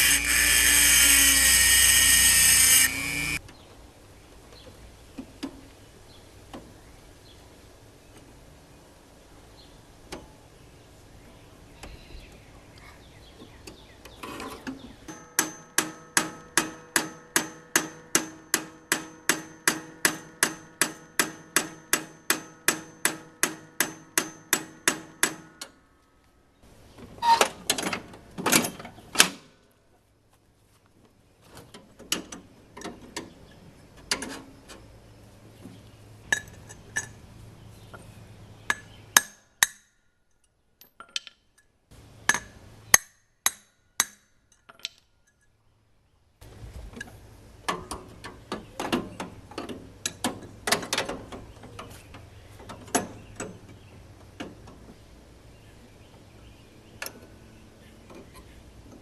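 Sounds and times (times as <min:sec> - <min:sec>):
hammer striking ringing steel: 0:15.1 - 0:25.6.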